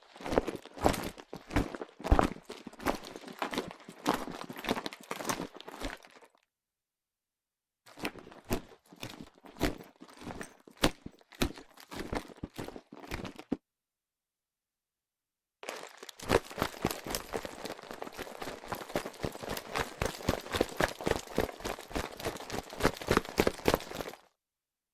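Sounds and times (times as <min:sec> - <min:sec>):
handbag material crinkling: 0:15.6 - 0:24.2.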